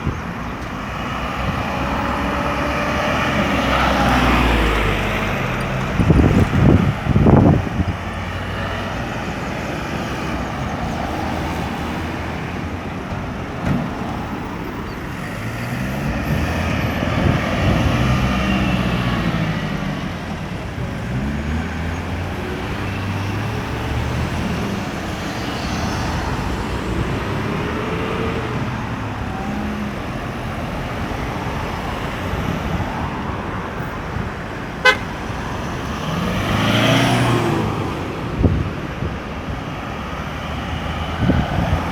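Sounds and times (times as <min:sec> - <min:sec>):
traffic passing: 0:00.0 - 0:41.9
vehicle accelerating away: 0:01.0 - 0:09.1, 0:15.2 - 0:32.0, 0:35.6 - 0:38.3
short sharp horn toot: 0:34.8 - 0:35.2.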